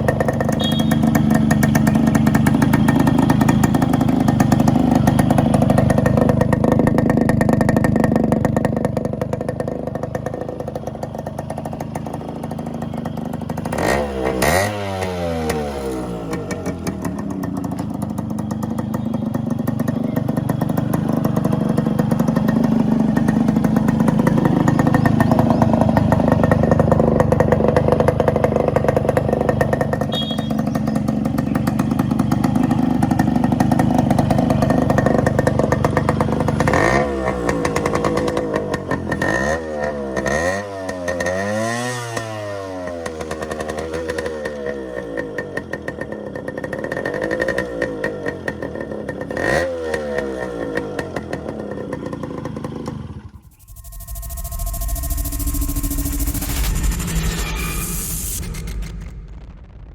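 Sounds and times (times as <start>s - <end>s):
two-stroke motorcycle engine revving: 0.0s - 57.0s.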